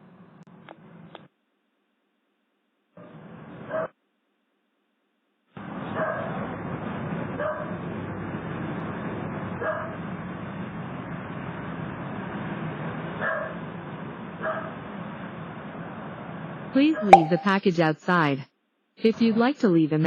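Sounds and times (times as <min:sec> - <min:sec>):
dog barking: 0:03.7 - 0:04.0, 0:06.0 - 0:06.3, 0:07.4 - 0:07.7, 0:09.6 - 0:10.0, 0:13.2 - 0:13.6, 0:14.4 - 0:14.7.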